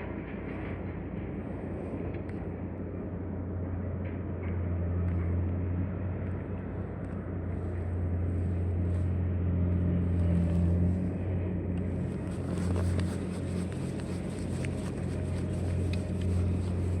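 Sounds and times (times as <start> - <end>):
engine humming: 0.2 - 17.0
small ticks: 11.8 - 17.0.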